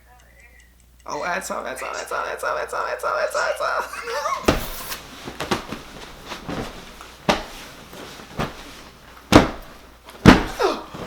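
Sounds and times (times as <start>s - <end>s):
knocks or thumps: 4.5s - 11.0s.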